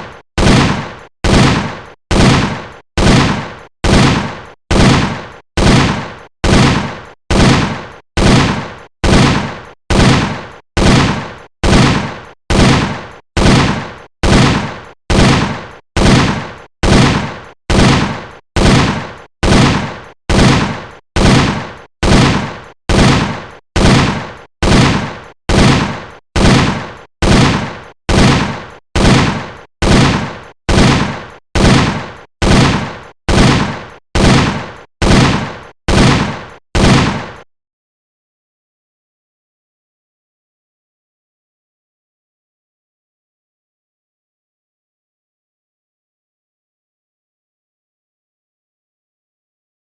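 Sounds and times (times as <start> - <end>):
machine gun firing: 0.0 - 37.5.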